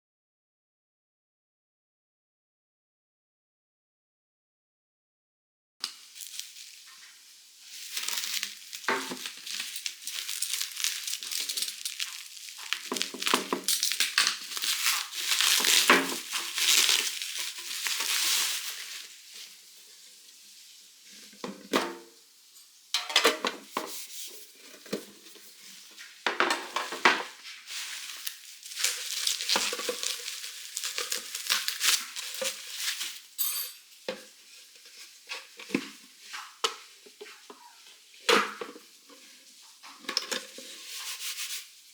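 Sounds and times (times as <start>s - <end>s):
packaging crinkling and rustling: 5.8s - 19.6s, 23.6s - 33.4s, 34.2s - 41.8s.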